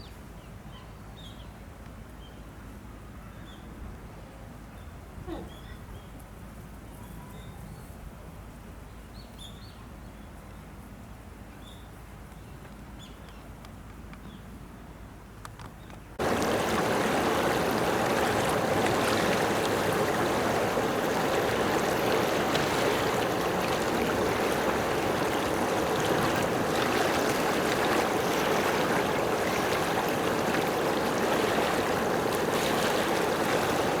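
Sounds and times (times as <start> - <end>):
running water rushing: 16.2 - 34.0.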